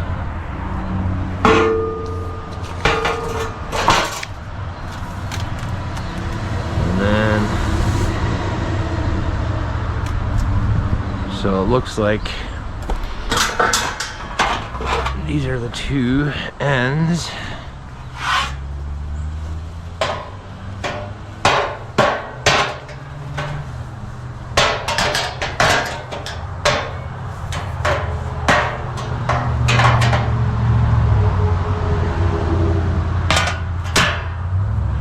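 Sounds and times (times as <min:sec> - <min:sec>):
steel panels knocking and clanking: 0:01.4 - 0:06.6, 0:12.8 - 0:15.7, 0:18.0 - 0:18.7, 0:19.3 - 0:30.8, 0:33.2 - 0:34.5.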